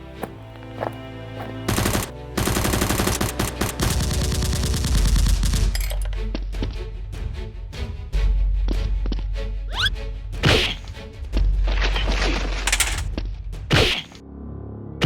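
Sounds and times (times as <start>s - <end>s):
background music: 0.0s - 15.0s
automatic gunfire: 1.7s - 5.7s.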